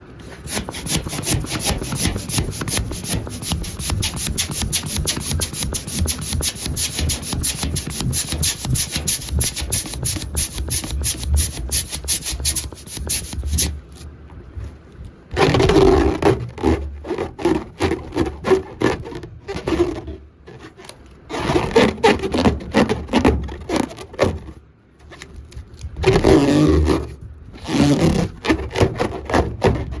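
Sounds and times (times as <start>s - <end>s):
rubber balloon squeaking: 0.2s - 13.8s.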